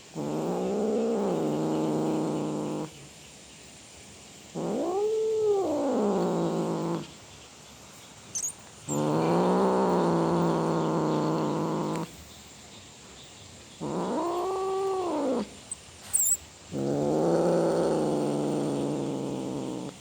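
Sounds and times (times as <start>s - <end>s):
sharp high chirps: 8.4s - 8.6s, 16.1s - 16.4s
cat yowling: 13.8s - 18.2s.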